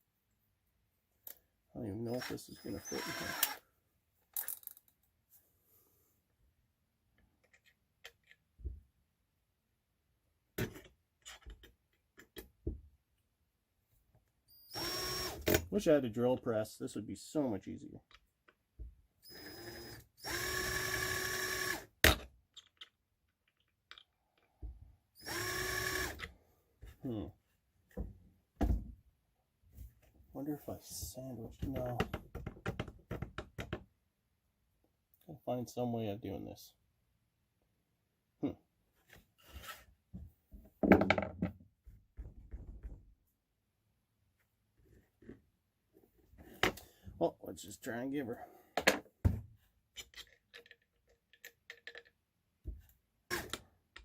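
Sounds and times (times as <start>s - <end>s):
power drill drilling into steel: 2.1s - 3.6s, 14.6s - 15.6s, 19.3s - 21.9s, 25.2s - 26.3s.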